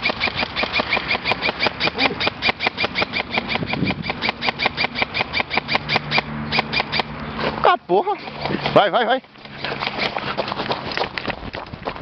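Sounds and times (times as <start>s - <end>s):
airsoft gun firing full-auto: 0.0s - 5.7s.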